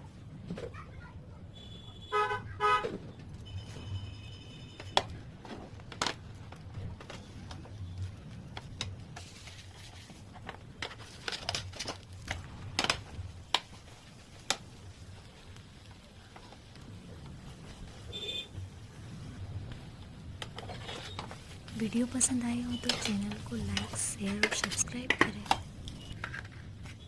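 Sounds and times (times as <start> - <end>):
horn honks: 1.6 - 5.0.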